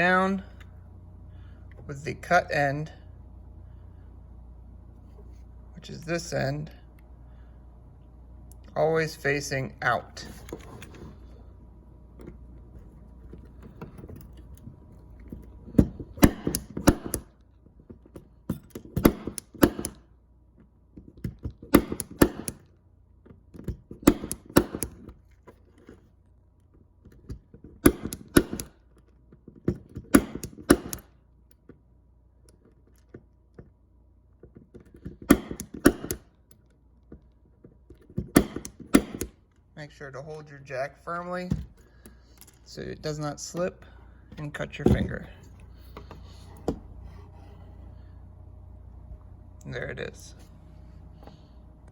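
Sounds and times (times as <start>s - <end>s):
punch-down tool clicks and snaps: 18.6s - 20.0s, 24.0s - 25.0s, 27.8s - 28.7s, 30.1s - 31.1s.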